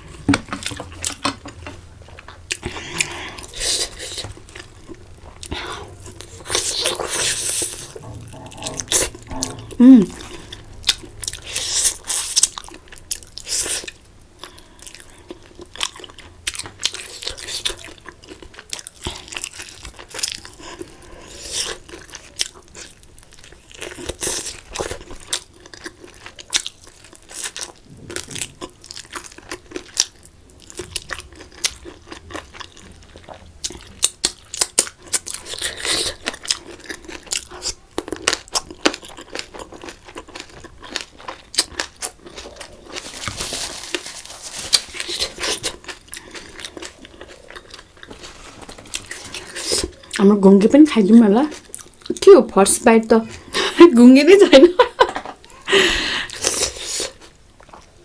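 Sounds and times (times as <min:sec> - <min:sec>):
person chewing crunchy food: 0:00.0 - 0:50.6, 0:51.5 - 0:52.3, 0:55.4 - 0:58.0.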